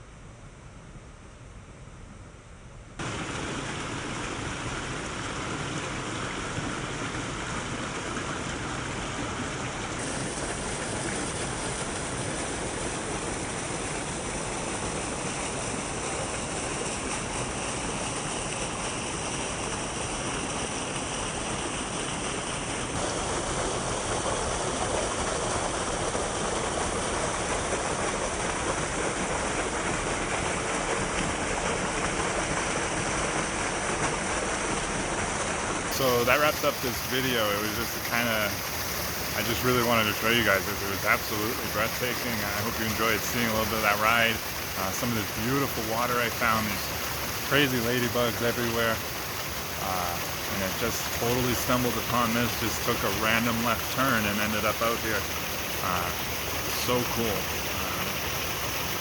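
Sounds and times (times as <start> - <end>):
waterfall rushing: 3.0 - 5.6, 35.9 - 59.0.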